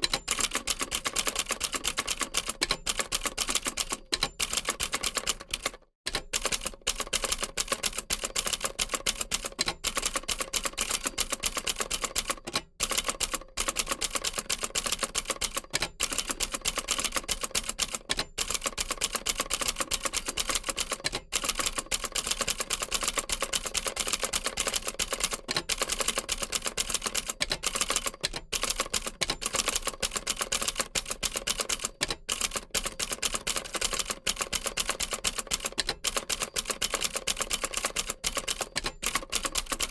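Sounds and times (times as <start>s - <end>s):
manual typewriter typing: 0.0s - 39.9s.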